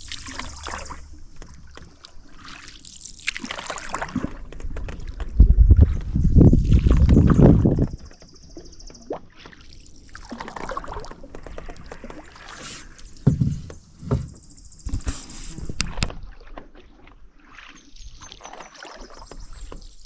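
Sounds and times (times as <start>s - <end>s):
paddle strokes in water: 0.0s - 20.0s
knocks: 13.2s - 15.0s.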